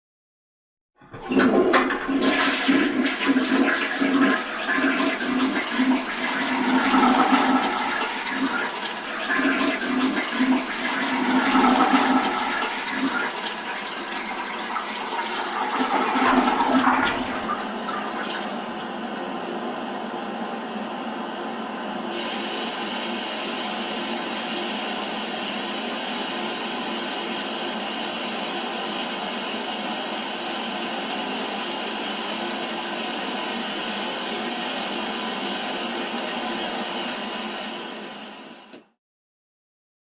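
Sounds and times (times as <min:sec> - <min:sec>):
running water: 0:01.0 - 0:19.2
toilet flushing: 0:01.0 - 0:38.8.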